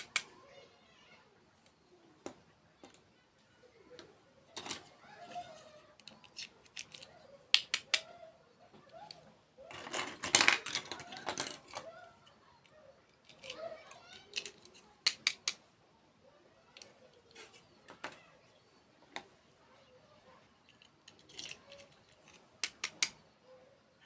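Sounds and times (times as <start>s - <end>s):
clicks of small objects handled: 0.0s - 0.3s, 4.0s - 8.1s, 8.7s - 15.6s, 16.7s - 18.2s, 20.6s - 23.2s.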